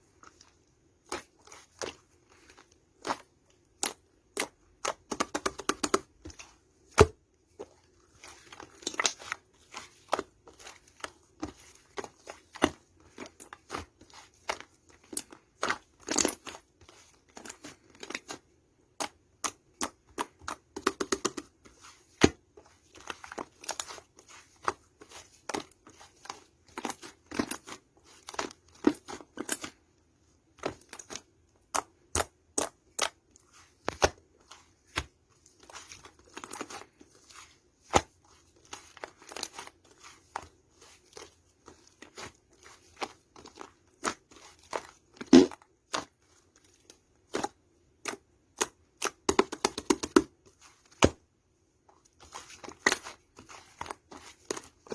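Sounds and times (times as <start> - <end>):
clay squeezed by hand crackling: 30.4 - 54.9.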